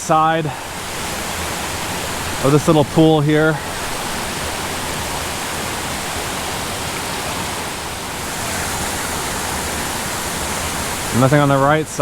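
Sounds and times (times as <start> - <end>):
water rushing over waterfall: 0.0 - 12.0.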